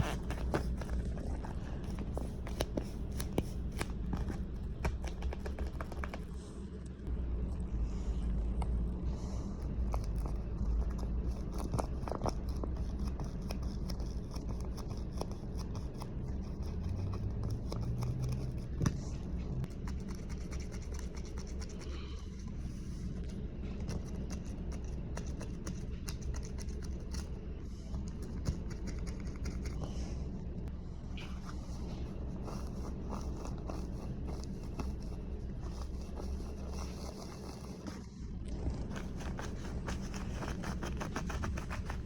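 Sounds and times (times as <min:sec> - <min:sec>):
handling noise scraping and scratching: 0:00.0 - 0:06.7, 0:31.1 - 0:42.0
steady low hum: 0:00.0 - 0:42.0.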